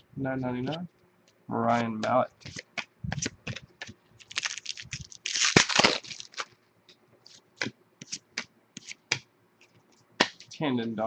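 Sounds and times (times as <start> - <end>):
cards sliding and rustling: 1.7 - 6.6, 7.2 - 10.6.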